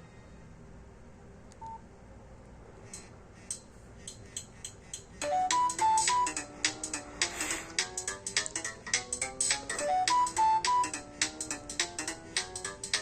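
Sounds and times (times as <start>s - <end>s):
polyphonic phone ringtone: 5.2s - 6.4s.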